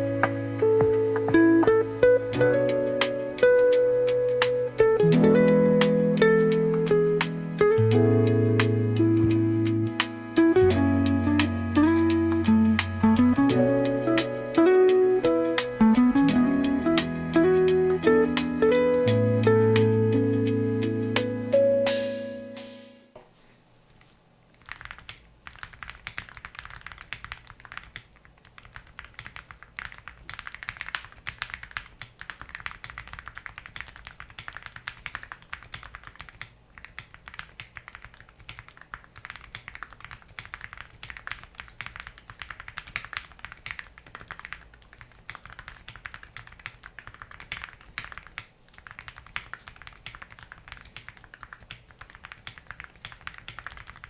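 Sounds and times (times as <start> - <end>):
fast typing on mechanical keyboard: 24.5 - 54.0.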